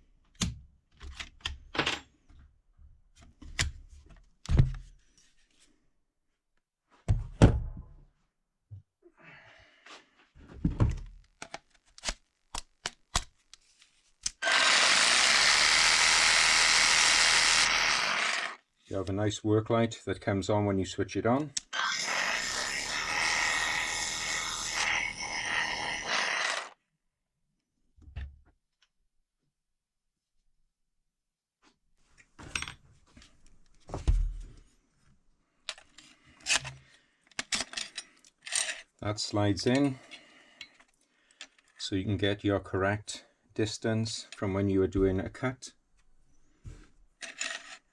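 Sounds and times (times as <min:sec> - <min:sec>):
jigsaw running: 0:14.4 - 0:18.6, 0:21.8 - 0:26.8.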